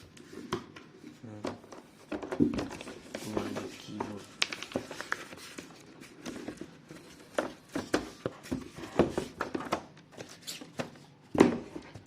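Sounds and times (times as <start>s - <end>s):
packaging handling clicks and rustles: 1.6s - 11.1s.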